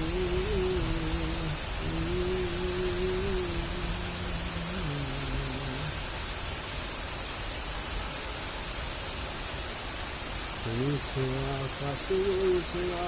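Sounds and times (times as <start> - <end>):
person humming: 0.0 - 6.0, 10.7 - 13.0
steady rain: 0.0 - 13.0.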